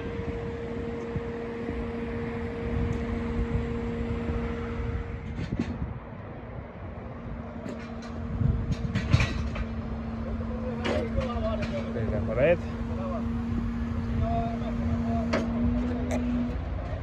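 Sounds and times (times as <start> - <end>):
hydraulic crane whine: 0.0 - 17.0
truck engine running: 6.9 - 17.0
knocks and clanks: 7.6 - 9.9.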